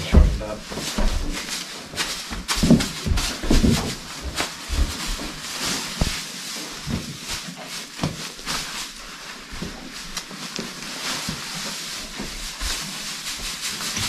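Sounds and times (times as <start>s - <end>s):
horses knocking and thumping in stalls: 0.0s - 8.4s, 11.2s - 14.0s
steady hiss: 0.0s - 14.0s.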